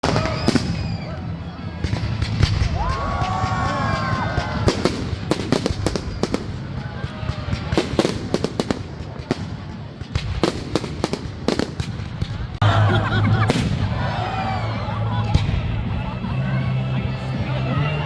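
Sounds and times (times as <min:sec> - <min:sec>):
fireworks bangs and crackles: 0:00.0 - 0:16.2.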